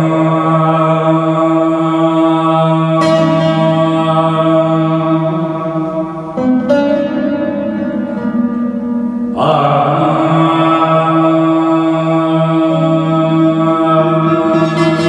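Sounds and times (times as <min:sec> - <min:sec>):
long held melodic notes: 0:03.0 - 0:10.5.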